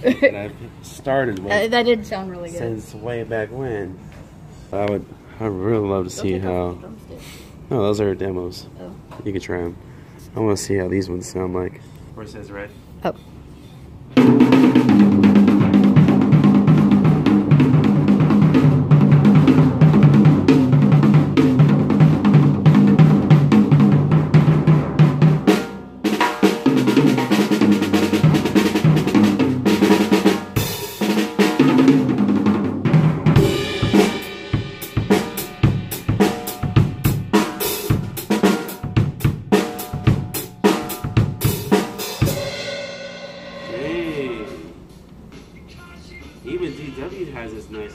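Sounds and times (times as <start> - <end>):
drum rolls: 14.1 - 47.9
snare and bass drum hits: 14.2 - 42.9
cymbal crashes: 33.3 - 45.1.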